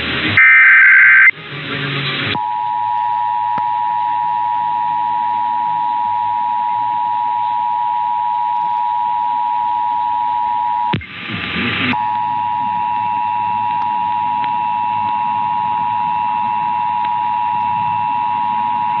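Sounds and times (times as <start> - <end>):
radio hiss: 0.0 - 1.3, 11.0 - 19.0
two-tone attention signal: 0.4 - 1.3
warbling data squawk: 0.4 - 1.3.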